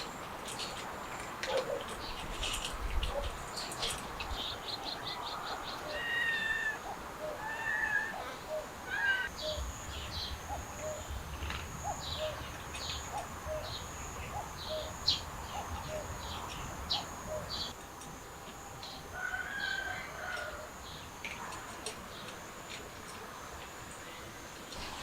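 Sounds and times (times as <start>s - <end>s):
small birds chirping: 1.5s - 17.8s.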